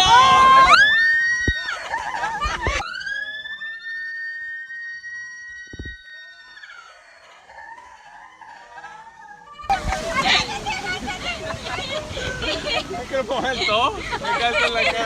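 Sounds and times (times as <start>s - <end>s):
people screaming: 0.0s - 15.0s
water splashing and rushing: 9.7s - 15.0s.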